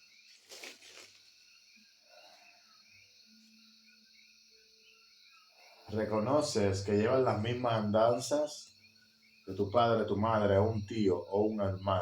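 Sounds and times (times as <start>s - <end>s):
soft rustle: 0.0s - 1.6s
faint chirping: 0.0s - 12.0s.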